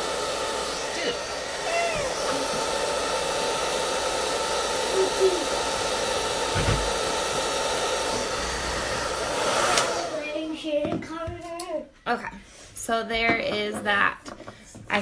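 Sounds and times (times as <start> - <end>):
hair dryer running: 0.0 - 11.1.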